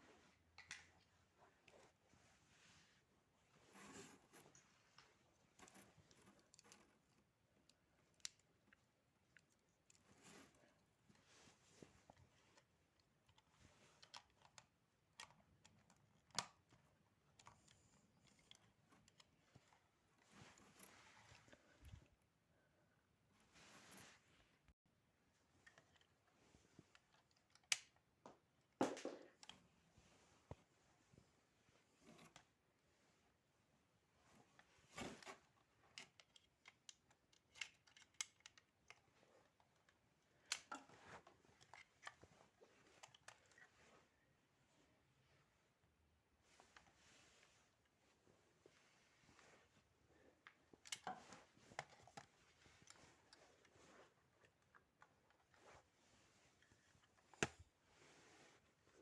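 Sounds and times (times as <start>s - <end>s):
faint clicks and light taps: 4.5s - 10.1s, 50.3s - 55.8s.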